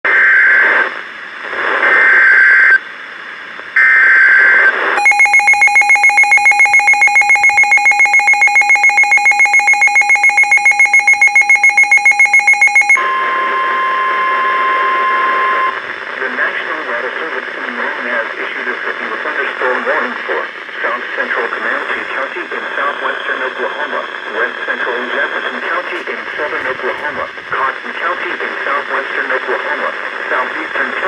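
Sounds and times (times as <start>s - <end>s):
shrill electronic alarm beeping: 5.0s - 15.7s
steady warning tone: 5.0s - 15.8s.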